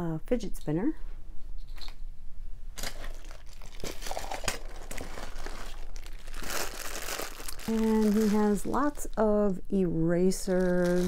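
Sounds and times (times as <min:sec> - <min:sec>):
plastic packaging crinkling: 0:02.8 - 0:09.6, 0:10.3 - 0:11.0.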